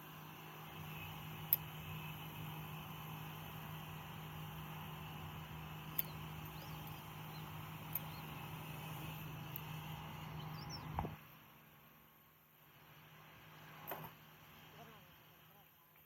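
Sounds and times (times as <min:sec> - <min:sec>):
low machine hum: 0:00.0 - 0:16.0
sharp clicks: 0:05.9 - 0:08.4.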